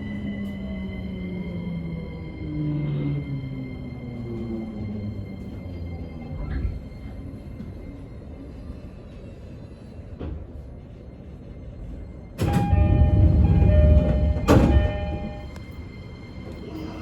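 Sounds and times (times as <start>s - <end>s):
doors closing thud: 12.4s - 15.6s
two-note door tone: 12.4s - 15.8s
train doors rushing noise: 12.4s - 17.0s.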